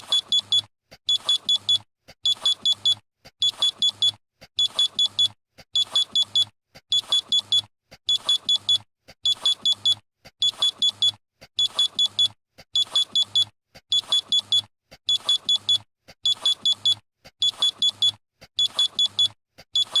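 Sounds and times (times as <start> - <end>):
electronic alarm beeping: 14.0 - 20.0.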